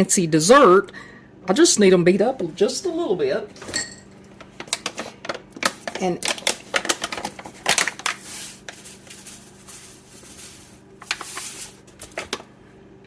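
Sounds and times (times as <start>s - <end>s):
soft scraping in bowl: 8.2s - 11.8s.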